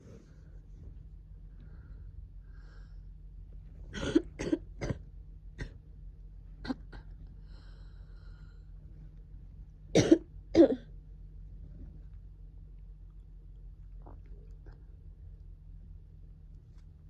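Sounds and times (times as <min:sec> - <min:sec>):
person coughing: 0:03.9 - 0:05.0, 0:06.6 - 0:07.1, 0:10.0 - 0:10.9.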